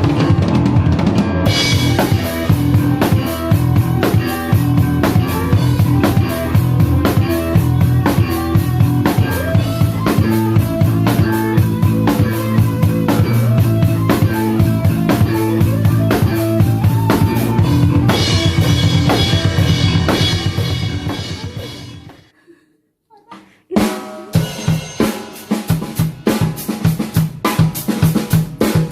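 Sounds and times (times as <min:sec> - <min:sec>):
sustained bass and guitar: 0:00.0 - 0:22.2
drum kit groove: 0:00.0 - 0:22.3, 0:23.4 - 0:28.9.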